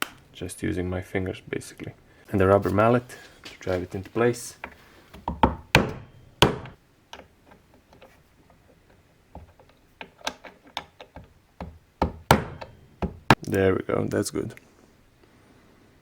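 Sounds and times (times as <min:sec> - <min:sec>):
rubber mallet tapping metal: 0:05.2 - 0:06.8, 0:10.8 - 0:13.4.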